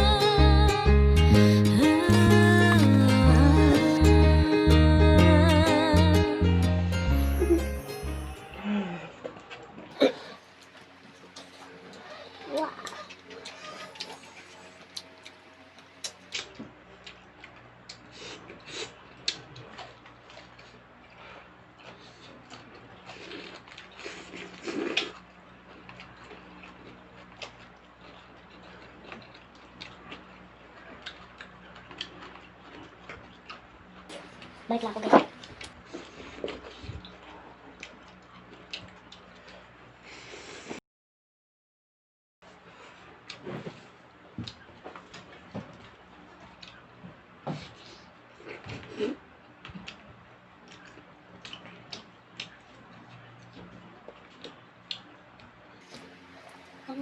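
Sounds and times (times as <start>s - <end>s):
low steady hum: 0.0s - 23.9s.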